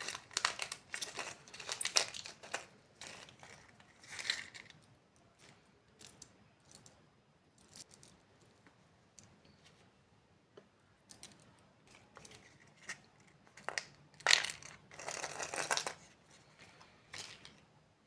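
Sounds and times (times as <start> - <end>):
wrapper crinkling: 0.0 - 4.8.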